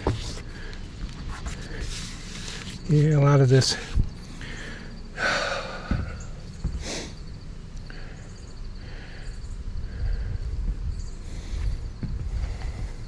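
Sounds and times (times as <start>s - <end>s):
low rumble: 3.8s - 13.0s
man breathing hard: 3.9s - 13.0s.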